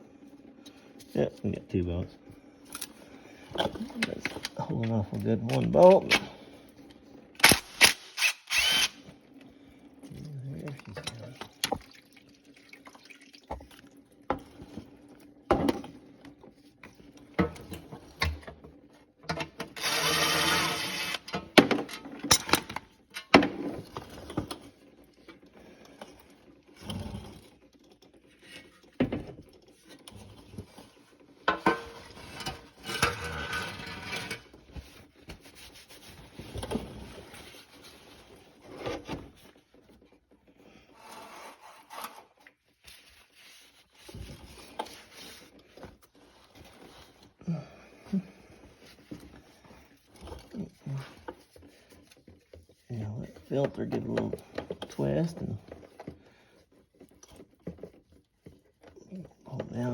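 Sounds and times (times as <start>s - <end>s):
fluid pouring and dripping: 9.5s - 15.4s
fluid splashing: 11.2s - 14.0s.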